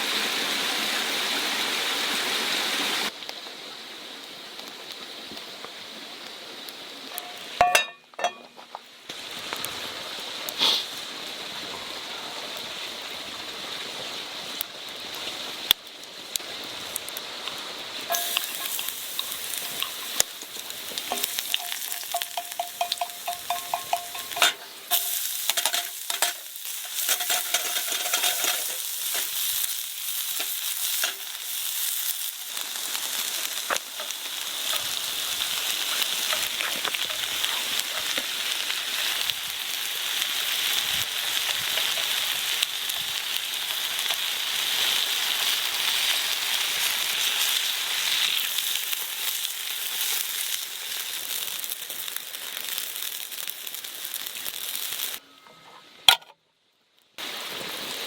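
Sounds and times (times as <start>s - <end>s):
food sizzling in a pan: 0.0s - 55.2s, 57.2s - 58.0s
utensil scraping a pan: 18.1s - 29.7s.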